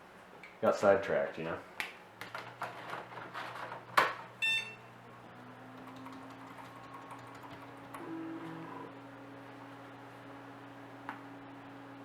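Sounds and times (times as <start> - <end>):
short electronic beep: 4.4 - 4.8.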